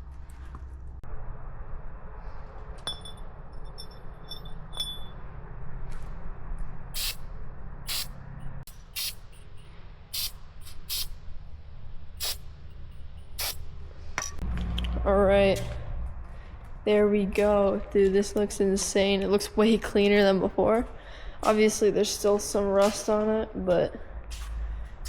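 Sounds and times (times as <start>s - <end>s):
faint metallic clinks: 2.8s - 5.2s
liquid spray squirts: 9.0s - 9.2s, 10.2s - 11.1s, 12.2s - 12.4s, 13.4s - 13.6s.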